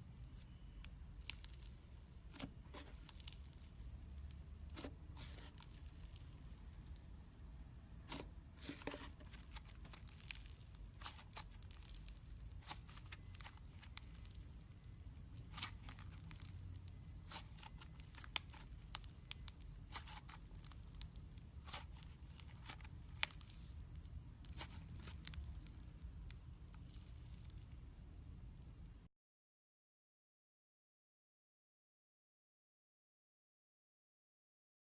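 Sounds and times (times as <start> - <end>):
low steady hum: 0.0 - 29.1
sticky slime clicks and crackles: 0.4 - 7.0, 9.2 - 14.8, 15.4 - 27.6.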